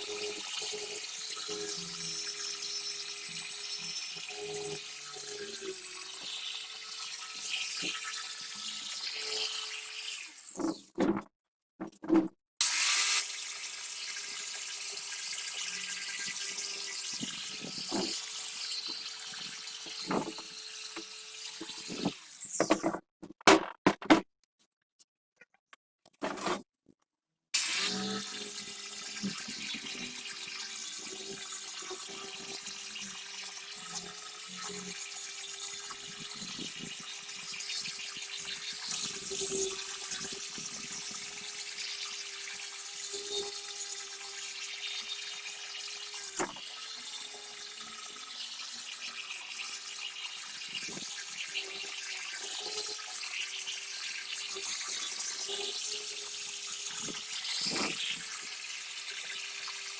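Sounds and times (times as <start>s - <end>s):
water running from a tap: 12.6s - 22.4s, 27.6s - 43.1s, 43.9s - 59.9s.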